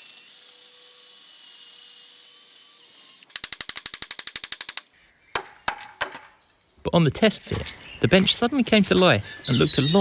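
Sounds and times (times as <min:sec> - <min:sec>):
fast sharp drill clicks: 0:00.0 - 0:04.9.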